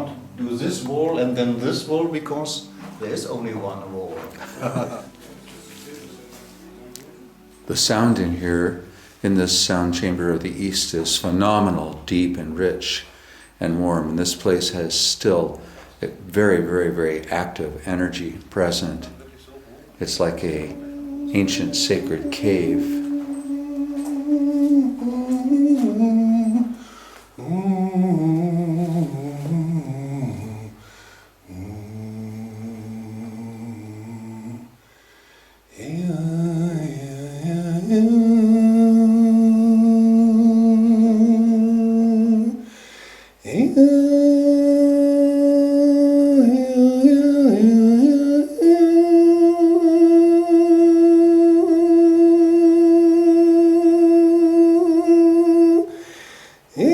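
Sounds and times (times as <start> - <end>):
person humming long notes: 20.1 - 34.8, 35.8 - 42.7, 43.5 - 56.0.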